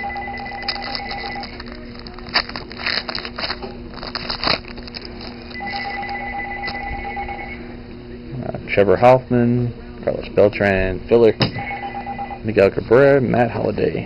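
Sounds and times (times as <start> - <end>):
telephone ringing: 0.0 - 1.6, 5.5 - 7.6, 11.5 - 12.5
wrapper crinkling as torn open: 0.4 - 6.8.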